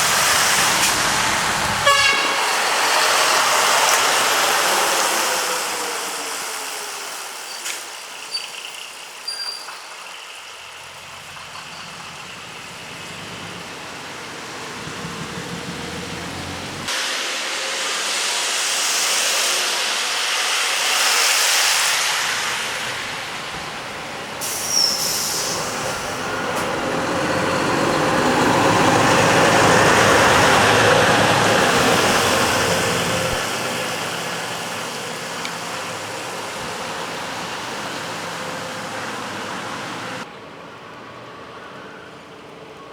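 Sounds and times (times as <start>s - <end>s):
diesel trucks driving past: 0.0s - 16.9s, 22.0s - 40.5s
air brake hiss: 24.4s - 26.7s.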